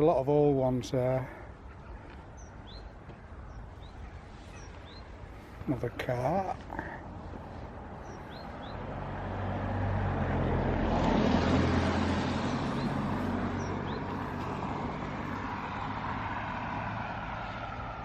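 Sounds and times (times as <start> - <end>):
car driving past: 8.0 - 18.0.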